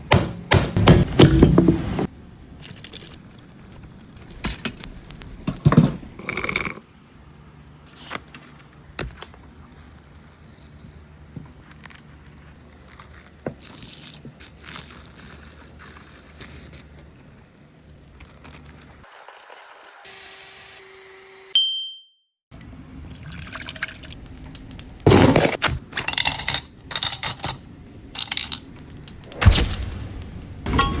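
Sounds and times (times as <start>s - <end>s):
metal parts clattering and clinking: 2.6s - 6.8s, 25.0s - 27.6s, 28.2s - 28.8s, 30.6s - 31.0s.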